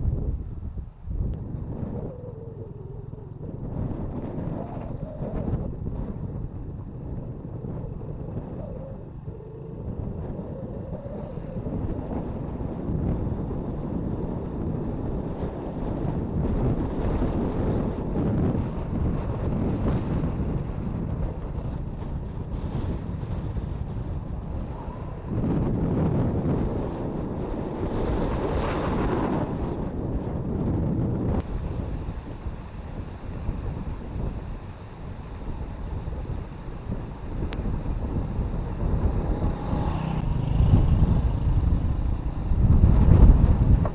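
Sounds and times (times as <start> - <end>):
wind buffeting microphone: 0.0 - 43.9
motorcycle engine running: 31.4 - 43.9.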